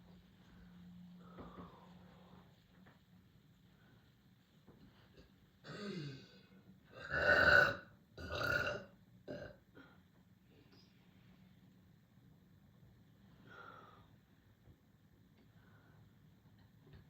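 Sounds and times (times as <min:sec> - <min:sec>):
person belching: 0:07.0 - 0:09.6.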